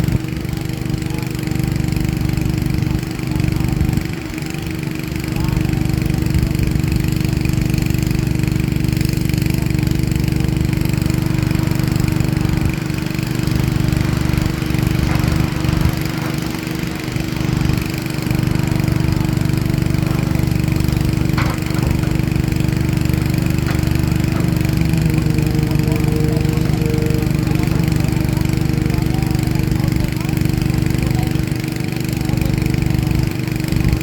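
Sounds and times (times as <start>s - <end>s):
diesel engine running under load: 0.0s - 34.0s
faint knocks: 10.3s - 28.8s.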